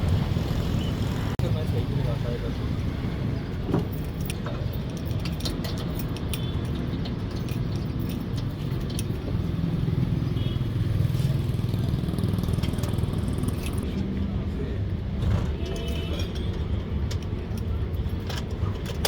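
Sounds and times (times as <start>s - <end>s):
traffic rumble: 0.0s - 19.0s
light metallic clinks: 3.7s - 9.8s, 12.4s - 13.9s.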